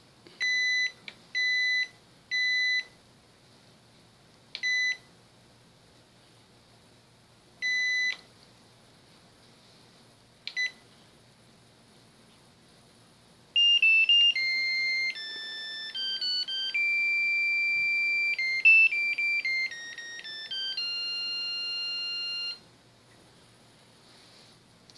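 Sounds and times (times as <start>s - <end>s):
electronic beeping melody: 13.6s - 22.6s.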